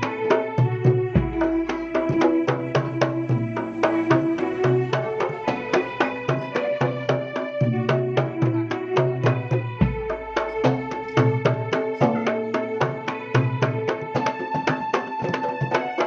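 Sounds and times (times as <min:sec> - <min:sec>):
drums in fast rhythm: 0:00.0 - 0:16.0
deep bass drum boom: 0:01.1 - 0:01.9.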